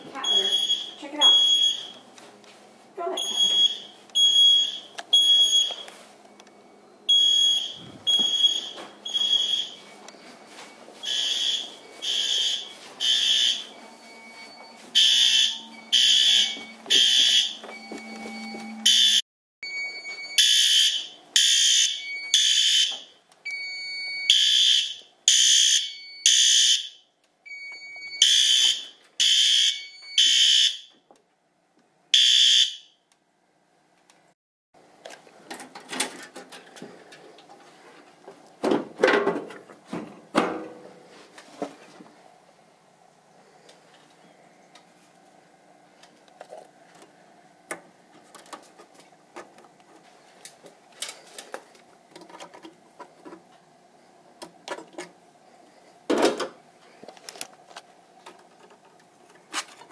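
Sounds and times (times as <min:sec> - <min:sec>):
fire alarm horn blasts: 0:00.2 - 0:02.0, 0:03.1 - 0:05.8, 0:07.1 - 0:09.8, 0:11.0 - 0:30.9, 0:32.2 - 0:33.0.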